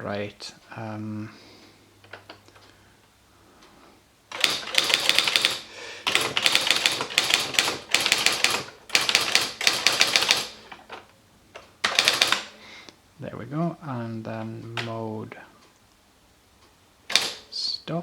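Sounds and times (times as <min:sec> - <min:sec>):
electric typewriter typing: 0:04.3 - 0:11.1, 0:11.8 - 0:12.6, 0:17.0 - 0:17.6.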